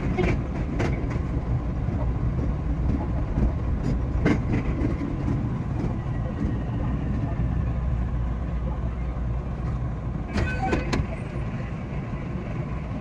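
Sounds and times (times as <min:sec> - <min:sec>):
train rumble: 0:00.0 - 0:13.0.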